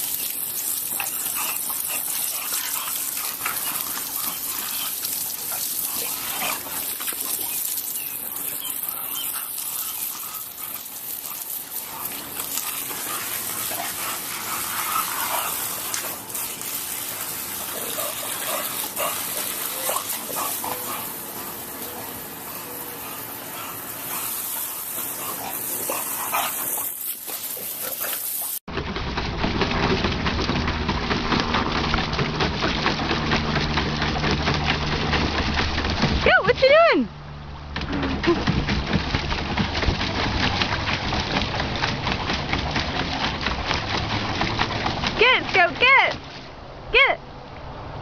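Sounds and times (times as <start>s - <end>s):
spraying water hiss: 0.0s - 28.7s
dog barking and yipping: 17.8s - 28.6s.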